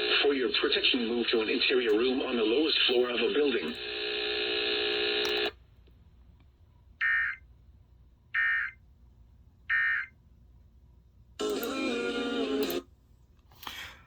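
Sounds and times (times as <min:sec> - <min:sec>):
radio music: 0:00.0 - 0:05.5, 0:11.4 - 0:12.8.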